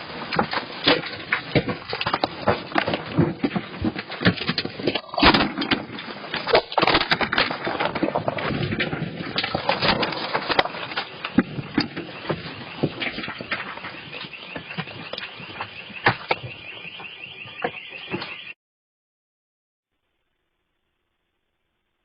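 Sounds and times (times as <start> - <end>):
building parts rattling and banging: 0.0 - 18.5
loud crack: 4.9 - 11.2.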